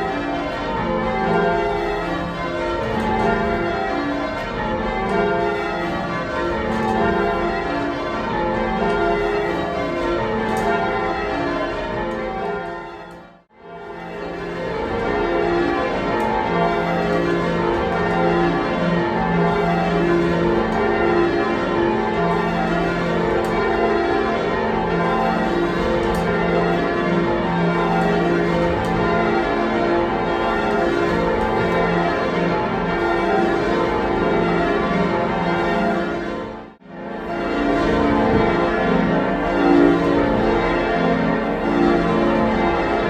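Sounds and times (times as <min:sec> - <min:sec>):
church bells pealing: 0:00.0 - 0:43.0.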